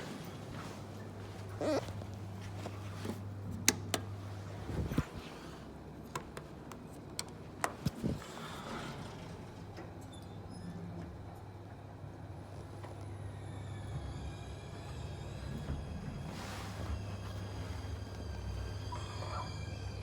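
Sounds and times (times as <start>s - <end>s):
elevator low hum: 0.0s - 20.0s.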